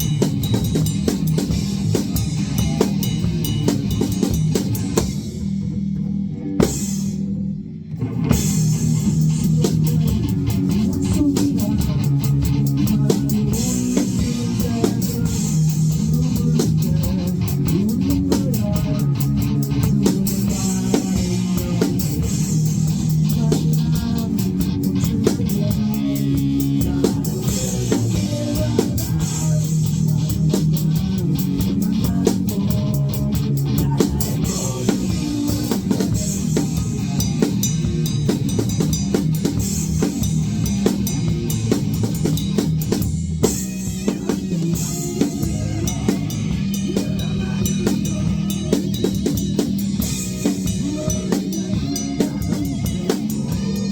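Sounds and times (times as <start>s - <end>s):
drums beating steadily: 0.0s - 53.9s
band playing instrumental: 8.1s - 53.9s.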